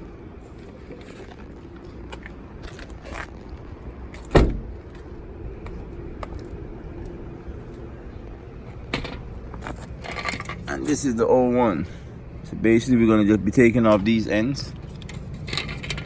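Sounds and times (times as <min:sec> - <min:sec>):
steady low rumble: 0:00.0 - 0:16.0
heavy thump: 0:04.3 - 0:04.8.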